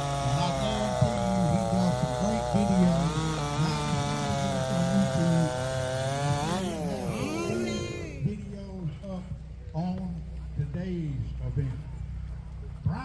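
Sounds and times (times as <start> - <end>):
chainsaw cutting through log: 0.0 - 8.5.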